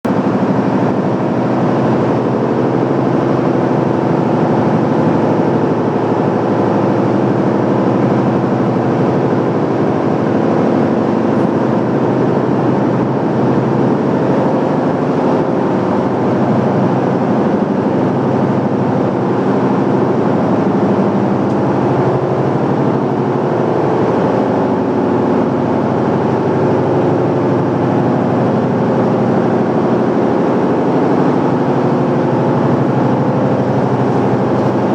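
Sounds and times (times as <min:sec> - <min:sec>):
machinery drone: 0:00.1 - 0:34.9.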